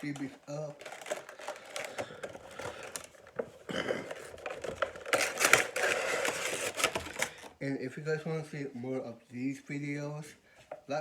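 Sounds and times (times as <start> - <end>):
packaging clicks and taps: 0.0 - 7.6
packaging rustling and scraping: 0.0 - 7.6.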